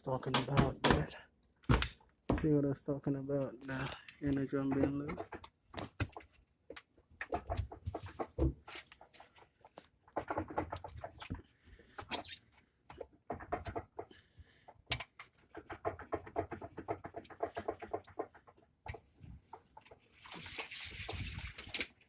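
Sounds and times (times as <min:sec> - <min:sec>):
drum knocking and rattling: 0:00.2 - 0:01.2.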